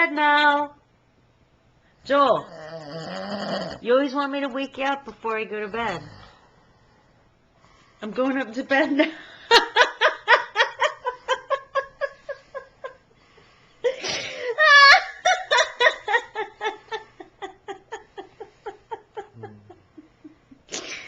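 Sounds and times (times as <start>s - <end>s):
woman laughing hard: 9.0s - 13.0s, 13.8s - 20.7s.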